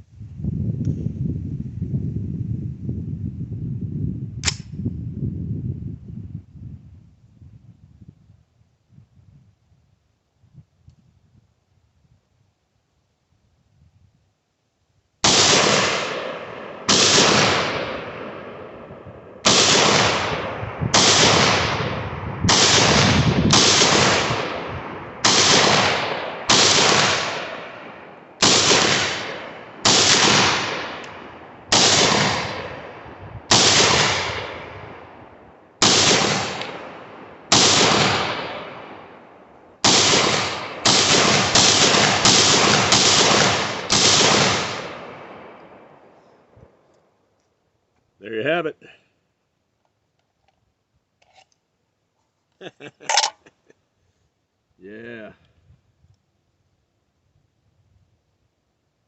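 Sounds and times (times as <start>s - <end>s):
gunshots ringing out: 15.2s - 35.2s, 35.8s - 46.2s.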